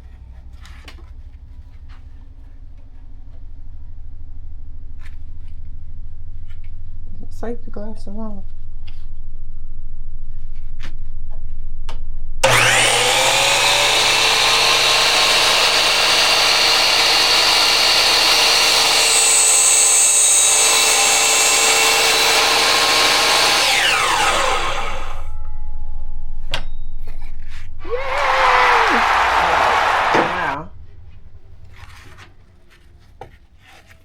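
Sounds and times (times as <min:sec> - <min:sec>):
saw blade cutting board: 0:12.4 - 0:25.3, 0:27.8 - 0:30.7
miter saw motor whining: 0:12.4 - 0:25.4, 0:27.8 - 0:31.8.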